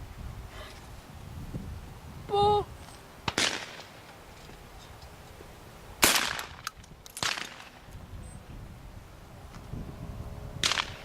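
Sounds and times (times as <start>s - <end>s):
shotgun firing: 3.3s - 3.8s, 6.0s - 6.6s.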